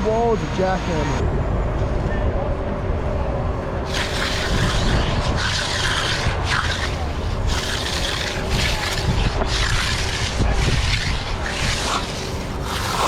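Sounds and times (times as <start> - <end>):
engine rumbling: 0.0 - 13.0
rhythmic rasping scrapes: 3.9 - 13.0.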